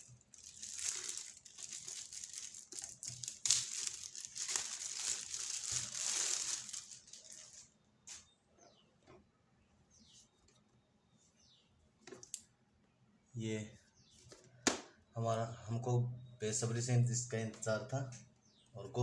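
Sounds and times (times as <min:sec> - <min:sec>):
packaging rustling and crinkling: 0:00.0 - 0:08.2.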